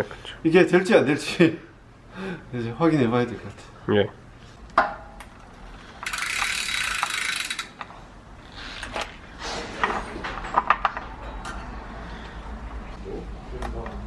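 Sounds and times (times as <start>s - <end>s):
bike ratchet rasping: 5.4s - 7.9s.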